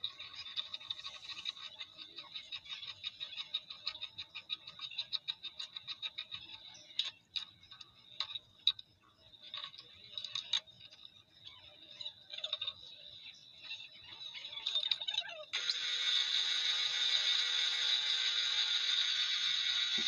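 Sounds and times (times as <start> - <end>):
faint high whine: 6.4 - 20.0
machine running: 15.6 - 20.0.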